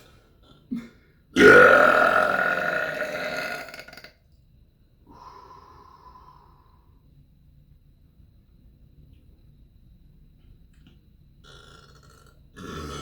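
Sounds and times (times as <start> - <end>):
loud human burp: 0.7 - 4.2, 11.4 - 13.0.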